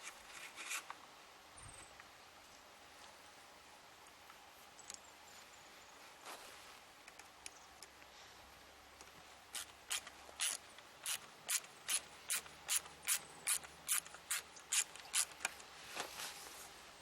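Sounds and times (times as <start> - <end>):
ratcheting hand tool clicking: 9.6 - 15.5.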